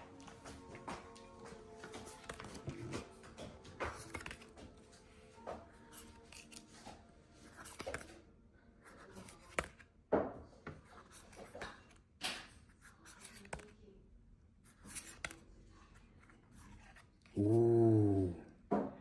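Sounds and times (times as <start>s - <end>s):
cards flicking: 1.9s - 3.1s, 3.8s - 4.5s, 7.5s - 8.2s, 9.0s - 9.8s, 11.0s - 13.7s, 14.7s - 15.4s.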